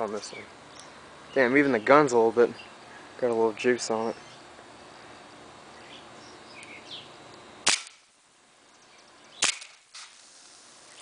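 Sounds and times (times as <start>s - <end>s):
airsoft pistol shots: 7.6s - 8.1s, 9.4s - 10.3s.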